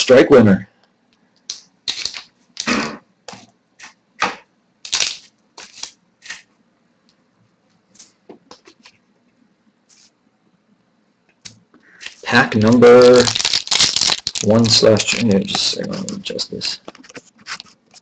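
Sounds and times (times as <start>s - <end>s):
cards and wrappers rustling: 1.9s - 2.7s, 4.9s - 6.4s, 11.9s - 18.0s.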